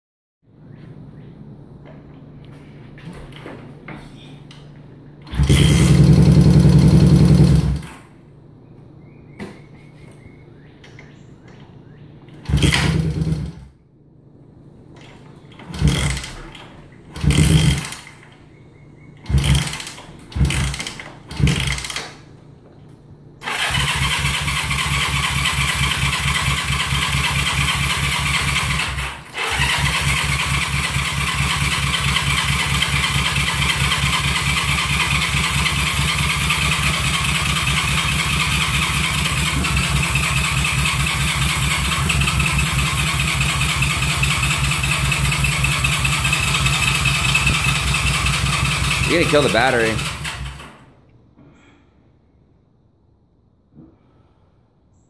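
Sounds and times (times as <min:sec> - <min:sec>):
motorcycle engine cranking and running: 0:05.2 - 0:08.2, 0:12.3 - 0:13.8, 0:14.9 - 0:18.4, 0:19.2 - 0:22.3, 0:23.4 - 0:51.0.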